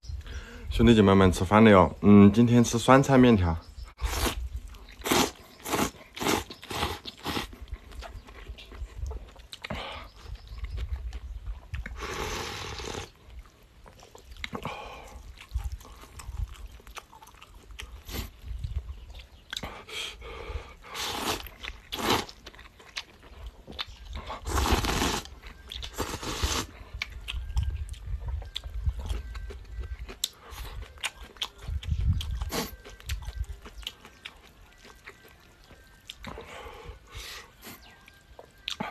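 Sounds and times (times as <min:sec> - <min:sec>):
person slurping noodles: 0:04.0 - 0:04.4, 0:05.0 - 0:07.5, 0:12.0 - 0:13.1, 0:20.9 - 0:22.3, 0:24.4 - 0:25.3, 0:25.9 - 0:26.7
person chewing with smacks: 0:04.0 - 0:19.9, 0:20.8 - 0:38.9.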